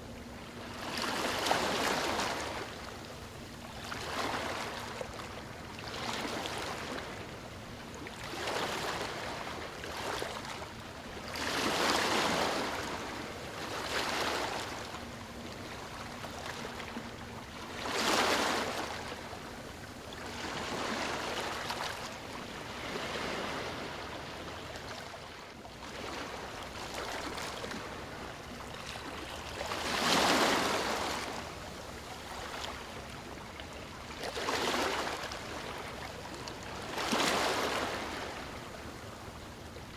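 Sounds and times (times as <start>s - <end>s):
small waves breaking on sand: 11.2s - 15.0s, 28.8s - 33.3s, 34.2s - 38.9s.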